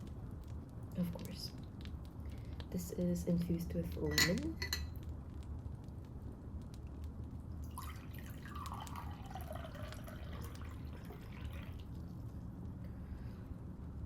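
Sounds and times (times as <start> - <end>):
water poured into a glass: 7.6 - 11.8.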